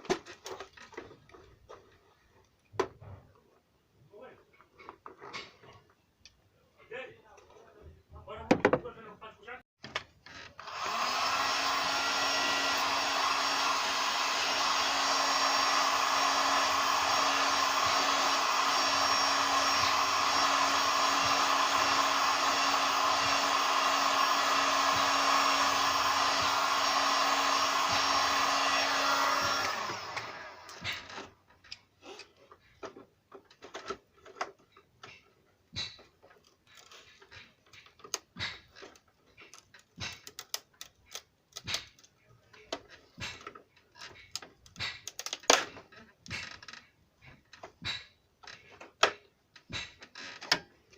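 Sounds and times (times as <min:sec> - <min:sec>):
hot-air gun blowing: 0:10.6 - 0:31.1.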